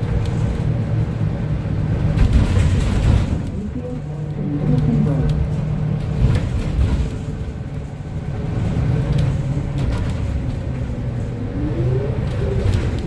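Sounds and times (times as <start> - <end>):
bus engine low rumble: 0.0 - 13.0
bus rattles: 0.0 - 13.0
whine rising in pitch: 11.3 - 12.6.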